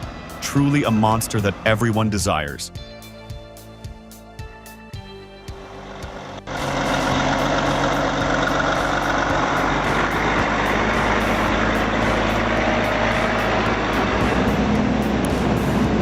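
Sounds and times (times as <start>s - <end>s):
heavy truck engine running: 0.0s - 2.0s, 5.5s - 16.0s
background music: 0.0s - 16.0s.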